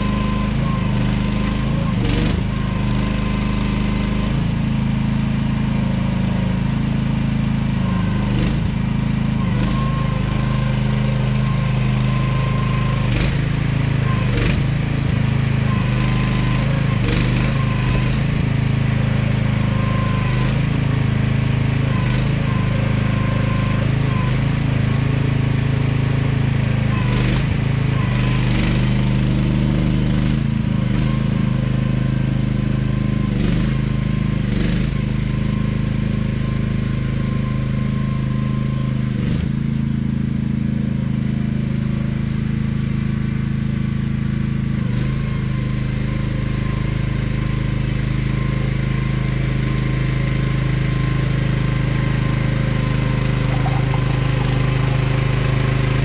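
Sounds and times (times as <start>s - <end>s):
excavator engine running: 0.0s - 39.1s, 44.8s - 56.0s
thin whine: 51.2s - 56.0s.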